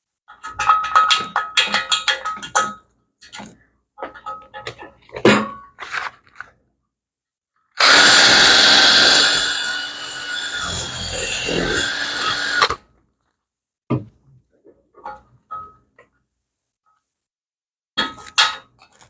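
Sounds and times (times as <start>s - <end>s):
electric drill boring: 7.8s - 12.8s.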